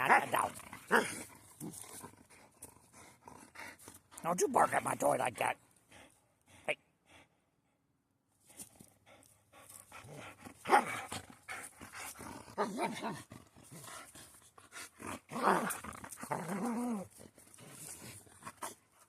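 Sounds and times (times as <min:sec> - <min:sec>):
dog growling in play: 0:00.0 - 0:04.3, 0:09.9 - 0:18.9.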